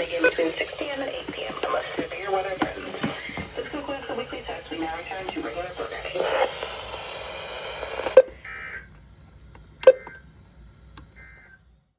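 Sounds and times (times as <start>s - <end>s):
buzzy data bursts: 0.0s - 3.0s
radio hiss: 0.0s - 8.9s.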